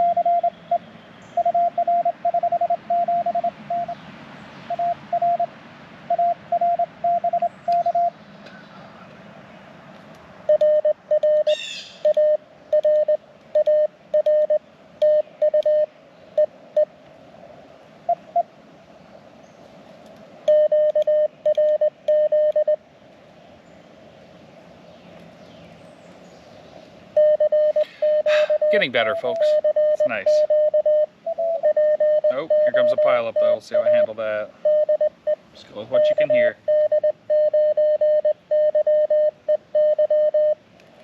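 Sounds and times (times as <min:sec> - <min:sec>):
morse code tone: 0:00.0 - 0:00.8, 0:01.4 - 0:04.0, 0:04.7 - 0:05.5, 0:06.1 - 0:08.2, 0:10.5 - 0:16.9, 0:20.5 - 0:22.8, 0:27.2 - 0:40.6.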